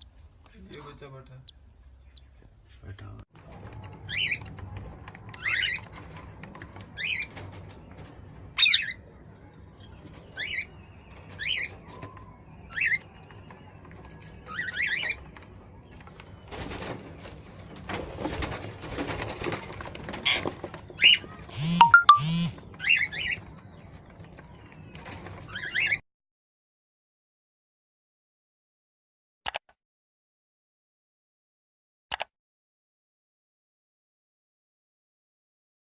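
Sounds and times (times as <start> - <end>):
wing flapping and rustling: 9.8 - 21.5.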